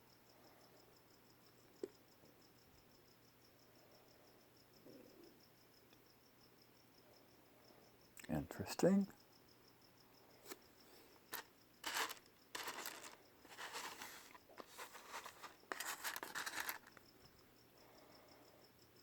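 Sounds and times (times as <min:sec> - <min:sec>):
crickets chirping: 0:00.0 - 0:19.0
stones rustling and clicking: 0:11.3 - 0:17.0.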